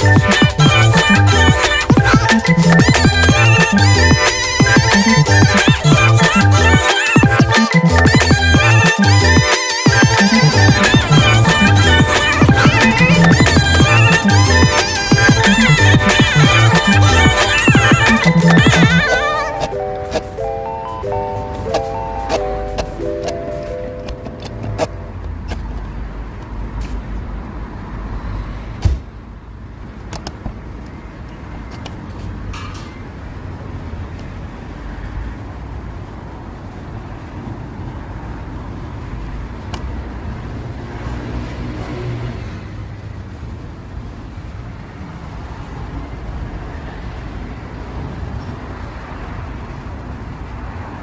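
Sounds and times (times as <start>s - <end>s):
car engine rumbling: 8.0s - 27.6s.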